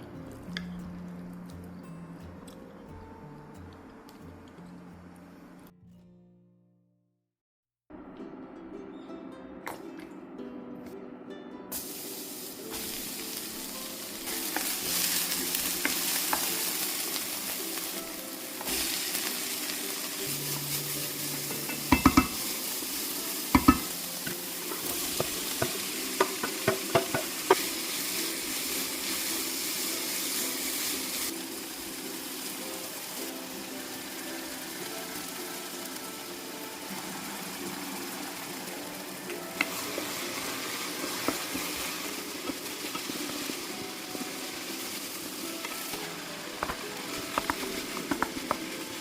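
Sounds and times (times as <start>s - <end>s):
food sizzling in a frying pan: 11.7s - 49.0s
utensil knocking against pan: 21.5s - 22.4s, 23.6s - 24.0s, 25.1s - 27.7s.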